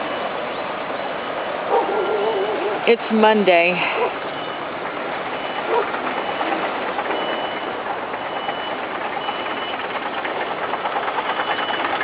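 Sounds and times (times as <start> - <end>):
diesel engines running: 0.0 - 12.0
backup alarm beeping: 4.3 - 10.3, 11.1 - 12.0.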